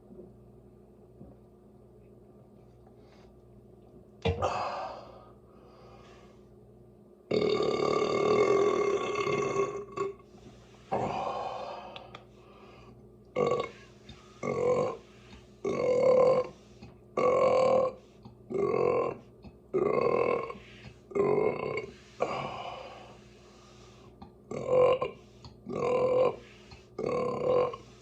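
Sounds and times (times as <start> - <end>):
person burping: 7.3 - 10.2, 13.3 - 16.6, 17.2 - 23.0, 24.5 - 28.0.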